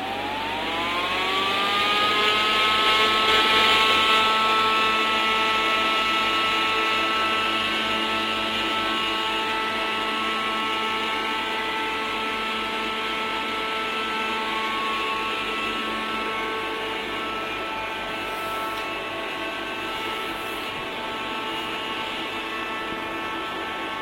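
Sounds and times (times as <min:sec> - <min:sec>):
air conditioner humming and whining: 0:00.0 - 0:24.0.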